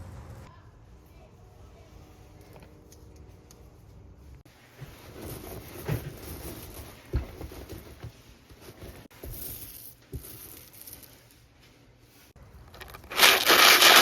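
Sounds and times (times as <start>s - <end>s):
rushing clattering of metal balls: 12.8s - 14.0s.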